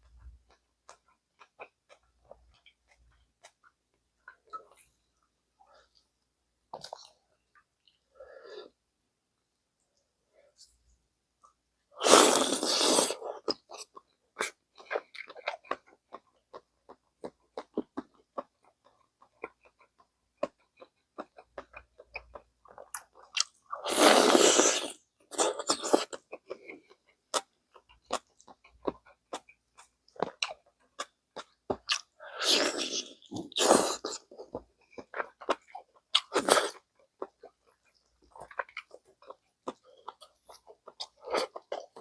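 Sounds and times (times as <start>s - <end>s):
soft chewing and mouth clicks: 0.0s - 8.8s, 13.2s - 23.8s, 24.4s - 42.0s.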